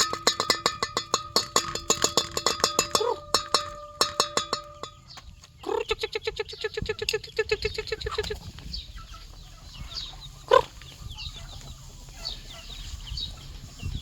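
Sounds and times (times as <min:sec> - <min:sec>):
chickens clucking: 0:00.0 - 0:14.0
chicks chirping: 0:02.9 - 0:14.0
chicken squawk: 0:05.6 - 0:13.6.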